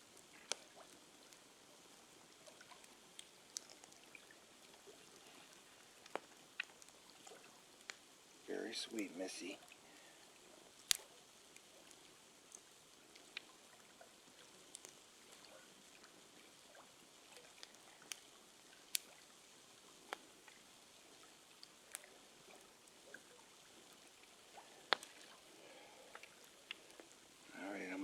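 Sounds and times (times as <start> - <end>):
faint steady hiss: 0.0 - 28.0
sharp clicks and pops: 5.5 - 7.0, 10.8 - 11.1, 24.9 - 25.2.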